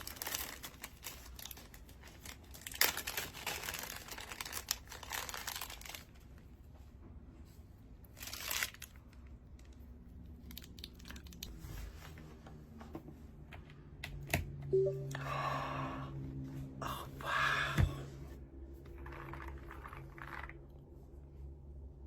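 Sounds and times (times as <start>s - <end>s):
packaging rustling: 0.0s - 6.3s, 8.2s - 9.0s.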